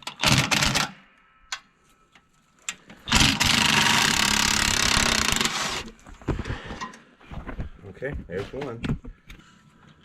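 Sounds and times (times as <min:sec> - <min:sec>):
impact wrench running: 0:03.1 - 0:05.9.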